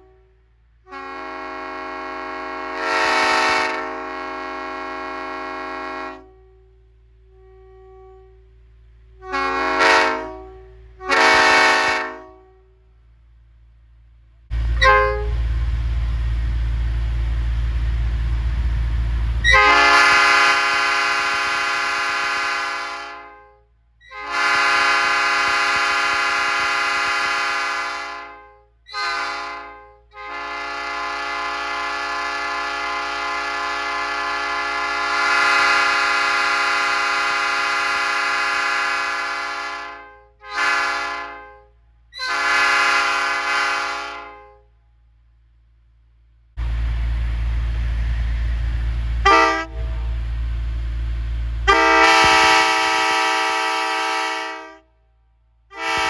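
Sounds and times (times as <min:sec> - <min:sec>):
train air horn blasts: 0:00.0 - 0:13.1, 0:14.5 - 0:15.6, 0:19.4 - 0:44.9, 0:48.0 - 0:50.3, 0:51.6 - 0:56.0
loud low rumble: 0:13.2 - 0:21.6, 0:46.4 - 0:53.2.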